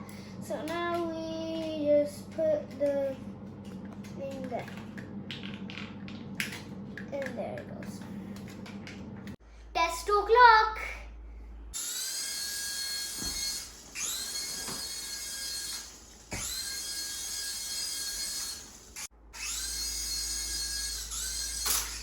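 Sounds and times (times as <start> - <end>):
toy helicopter rotor motors whining: 11.8 - 22.0.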